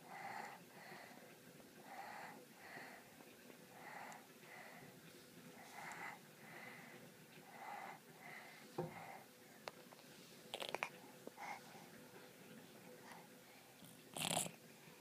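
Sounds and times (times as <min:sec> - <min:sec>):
wheezy snoring: 0:14.1 - 0:14.6.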